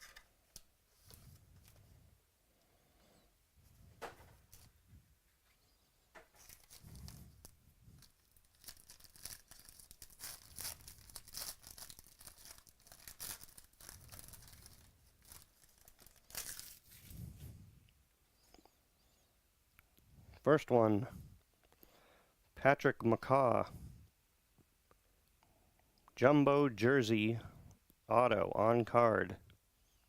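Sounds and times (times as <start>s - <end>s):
plastic wrapper crinkling and tearing: 6.3s - 17.0s.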